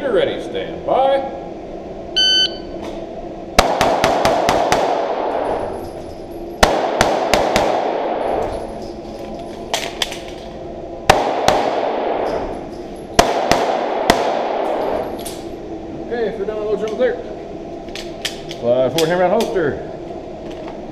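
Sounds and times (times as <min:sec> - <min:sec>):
pistol shots: 0:03.6 - 0:05.6, 0:06.6 - 0:08.4, 0:11.1 - 0:12.4, 0:13.2 - 0:15.0.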